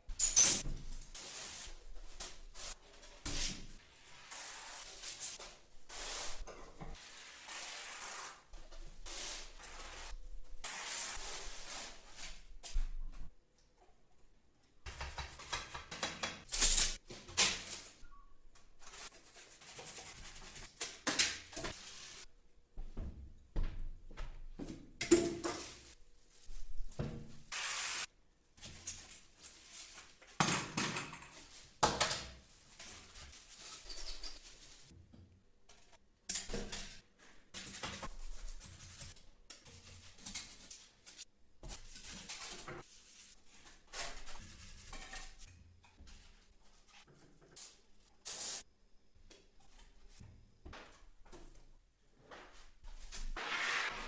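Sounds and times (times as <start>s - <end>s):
short hissing bursts: 27.5s - 28.1s, 53.4s - 54.0s
rubbing and scraping: 53.1s - 54.0s.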